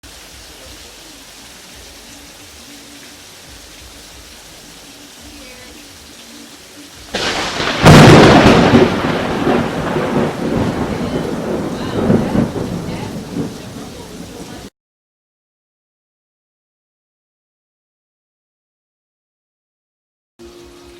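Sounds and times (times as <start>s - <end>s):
steady rain: 0.0s - 14.7s, 20.4s - 20.9s
loud rumbling thunderclap: 7.1s - 14.7s.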